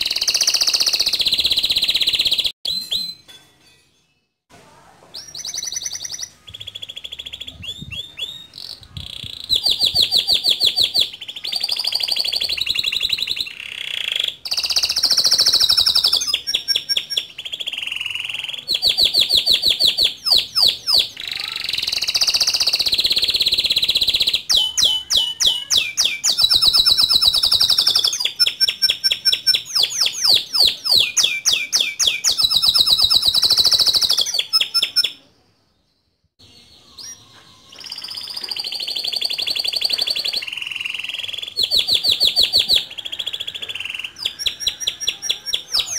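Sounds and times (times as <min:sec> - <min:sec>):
canary singing trills: 0:00.0 - 0:03.3, 0:05.2 - 0:45.9.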